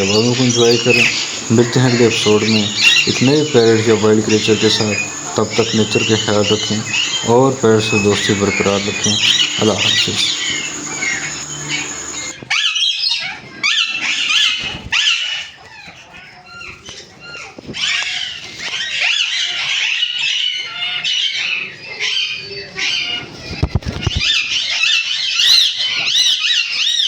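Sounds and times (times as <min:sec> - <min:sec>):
parrots chattering and squawking: 0:00.0 - 0:12.4.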